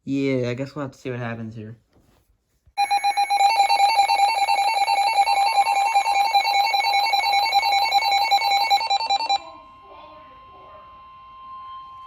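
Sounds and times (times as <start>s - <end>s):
shrill electronic alarm beeping: 2.8s - 12.0s.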